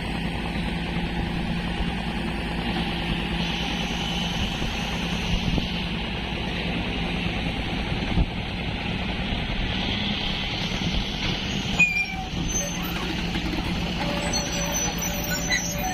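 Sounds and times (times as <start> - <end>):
excavator diesel engine running: 0.0 - 15.9
brief squeal: 11.5 - 13.3, 14.0 - 15.9.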